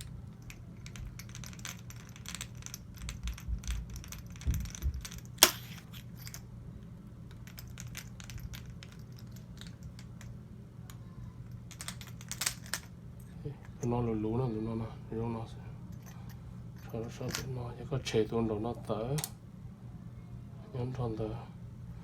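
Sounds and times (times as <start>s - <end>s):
small metal parts clicking: 0.0s - 6.5s, 7.3s - 12.9s
steady low hum: 0.0s - 22.0s.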